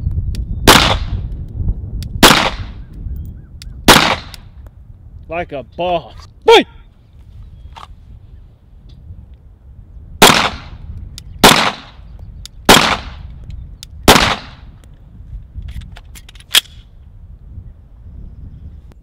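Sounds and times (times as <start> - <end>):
sharp crack: 0.3 - 2.8, 3.9 - 4.5, 10.2 - 14.9
pistol shots echoing: 0.7 - 1.1, 2.2 - 2.7, 3.9 - 4.4, 10.2 - 10.7, 11.4 - 12.0, 12.7 - 13.2, 14.1 - 14.6.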